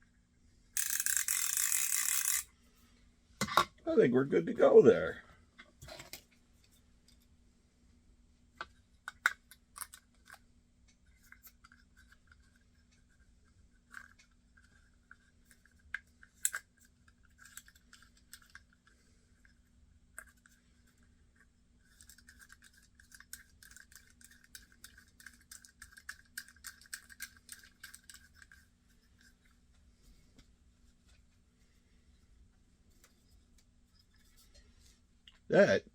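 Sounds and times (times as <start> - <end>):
fishing reel ratchet clicking: 0.8 - 2.5.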